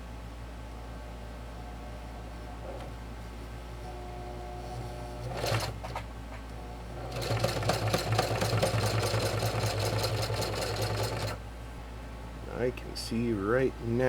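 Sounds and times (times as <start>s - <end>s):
sewing machine low hum: 1.5s - 11.4s
sewing machine stitching: 5.2s - 6.0s, 7.0s - 11.4s.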